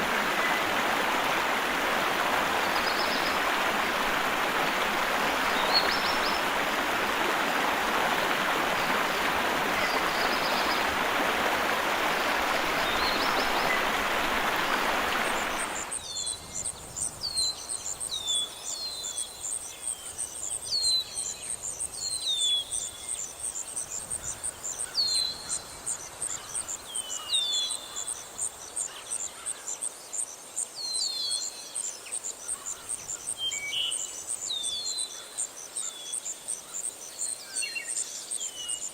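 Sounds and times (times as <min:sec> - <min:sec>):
rushing stream water: 0:00.0 - 0:16.1
birds chirping: 0:00.0 - 0:16.3.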